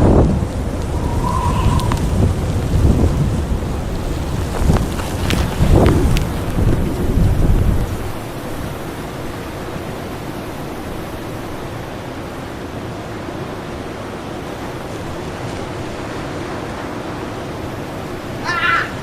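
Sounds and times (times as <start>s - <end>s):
strong blizzard wind: 0.0s - 19.0s.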